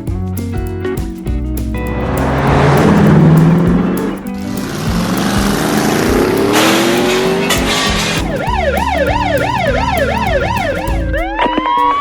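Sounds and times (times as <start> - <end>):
background music: 0.0 - 12.0
car engine revving: 1.9 - 11.2
police siren wailing: 6.6 - 12.0.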